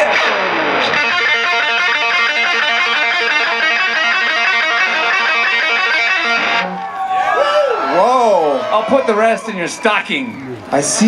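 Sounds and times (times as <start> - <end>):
electric guitar fast run: 0.0 - 6.9.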